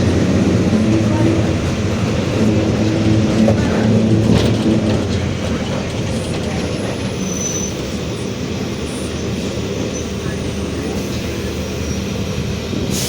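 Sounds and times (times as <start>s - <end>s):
rear differential growl: 0.0s - 7.6s
bus drivetrain and road rumble: 0.0s - 13.0s.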